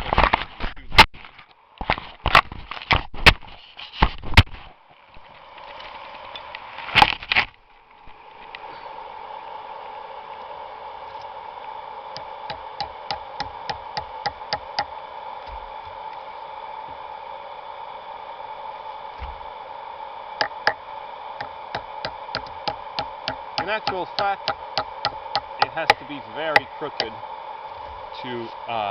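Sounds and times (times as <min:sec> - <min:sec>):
steady hum: 0:00.0 - 0:28.9
hammer driving nail into wood: 0:22.0 - 0:26.0.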